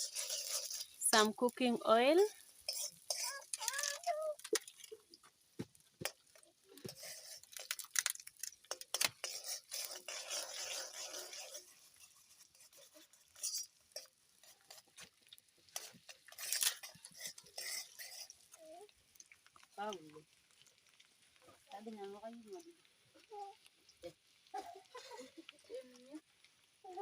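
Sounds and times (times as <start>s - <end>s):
metal utensils clinking on pot: 0.0s - 5.0s, 6.0s - 14.8s, 15.7s - 18.4s
onions sizzling in oil: 0.0s - 27.0s.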